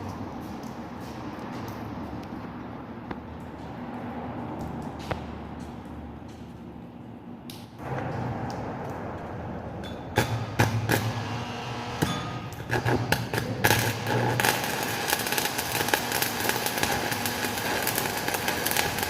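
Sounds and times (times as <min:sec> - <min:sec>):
welding arc crackling: 0:07.5 - 0:19.0.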